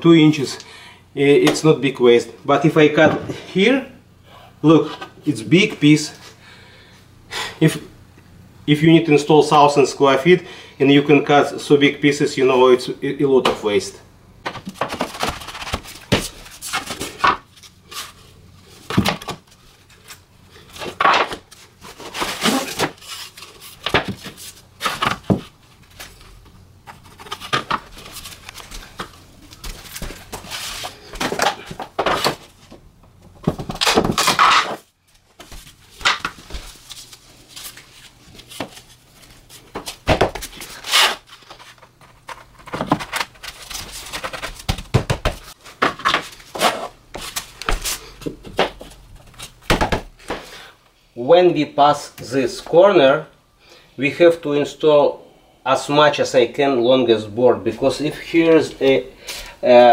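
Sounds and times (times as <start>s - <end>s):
flooring boards knocking and scraping: 42.3s - 48.9s.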